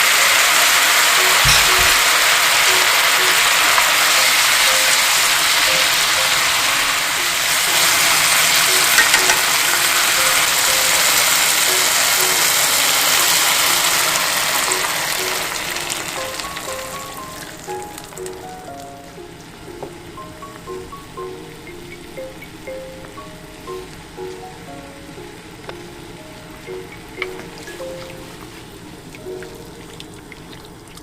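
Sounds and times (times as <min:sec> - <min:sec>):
food sizzling in frying pan: 0:00.0 - 0:28.8.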